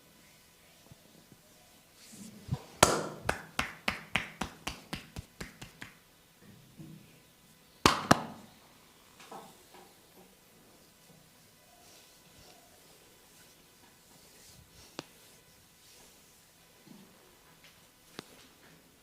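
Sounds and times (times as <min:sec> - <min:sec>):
hands clapping on body: 0:02.8 - 0:06.0, 0:07.8 - 0:08.3.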